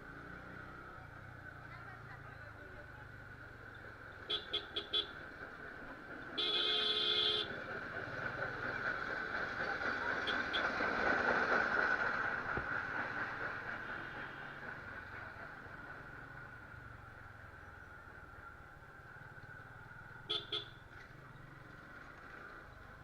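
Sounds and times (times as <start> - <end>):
vehicle horns honking: 4.3 - 5.2, 6.4 - 7.6, 20.3 - 20.8
motorcycle riding noise: 9.8 - 23.0.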